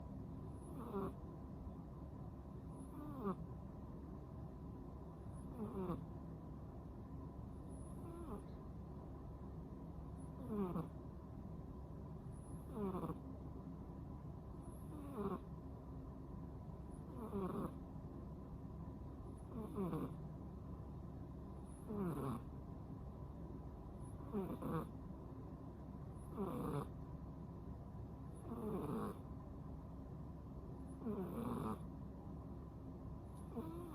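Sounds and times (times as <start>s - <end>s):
cat snoring: 0.5s - 1.2s, 2.8s - 3.4s, 5.3s - 6.0s, 7.7s - 8.6s, 10.2s - 11.0s, 12.3s - 13.2s, 14.6s - 15.5s, 16.9s - 17.8s, 19.4s - 20.2s, 21.6s - 22.5s, 24.0s - 25.0s, 26.2s - 27.0s, 28.3s - 29.2s, 30.9s - 31.9s, 33.4s - 33.9s.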